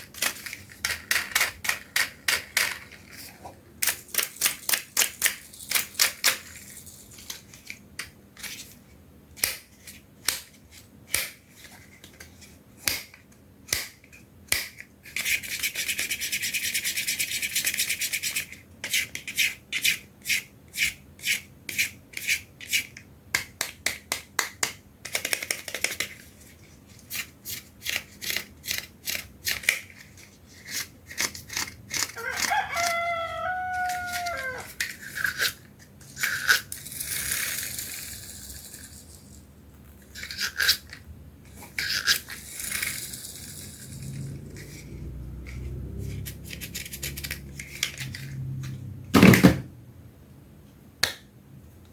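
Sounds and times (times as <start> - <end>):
plastic toys clicking together: 0.2 - 3.0, 3.8 - 6.6, 23.4 - 26.2.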